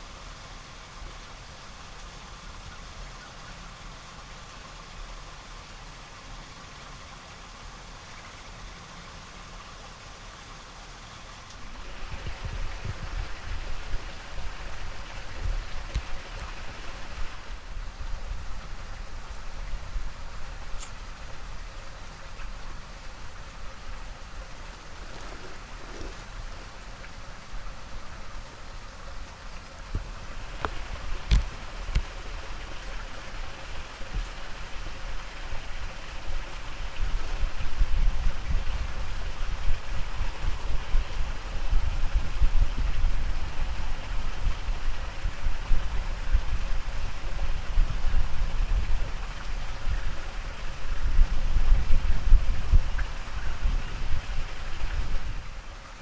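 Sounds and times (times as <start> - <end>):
low rumbling: 11.6 - 55.5.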